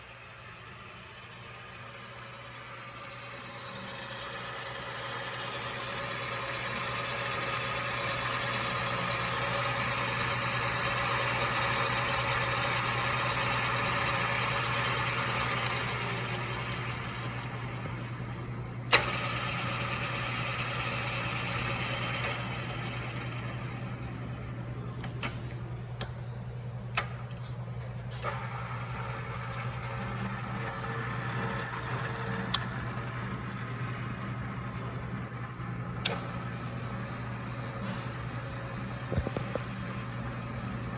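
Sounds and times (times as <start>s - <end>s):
drill press motor hum: 0.0s - 40.9s.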